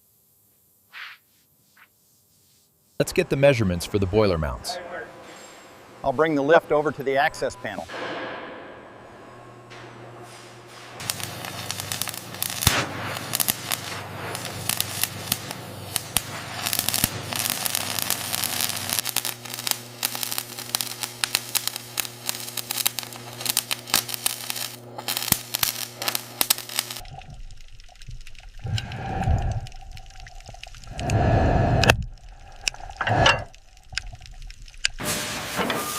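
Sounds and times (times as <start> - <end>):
low machine hum: 3.0 - 35.8
dense crackling and clicking: 11.0 - 35.1.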